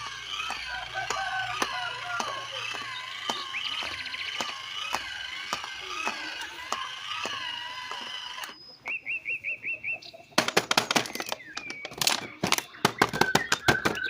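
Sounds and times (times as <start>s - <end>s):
regular tick: 0.0s - 9.0s
sharp clicks: 0.0s - 9.0s, 10.4s - 14.0s
bird-like chirping and whistles: 8.4s - 10.4s, 11.1s - 14.0s.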